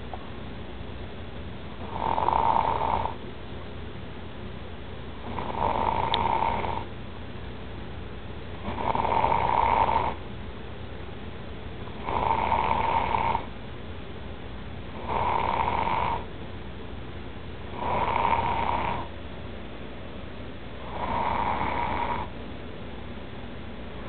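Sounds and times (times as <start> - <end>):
man snoring loudly: 1.8 - 3.2, 5.3 - 6.9, 8.6 - 10.2, 12.0 - 13.5, 15.0 - 16.2, 17.8 - 19.1, 20.8 - 22.3.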